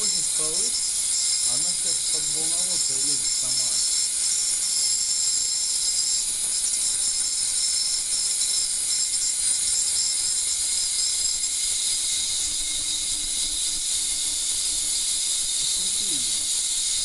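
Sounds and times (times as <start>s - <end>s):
cavitation hiss in water: 13.9s - 17.0s.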